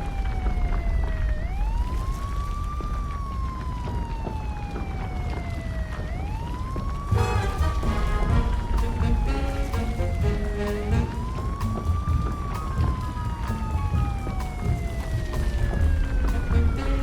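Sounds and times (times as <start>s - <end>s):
siren wailing: 0.0s - 17.0s
deep rumble: 7.1s - 17.0s.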